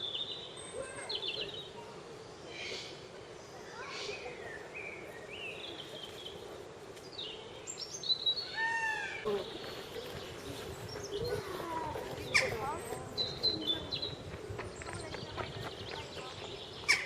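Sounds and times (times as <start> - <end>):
birds chirping and whistling: 7.2 - 17.0.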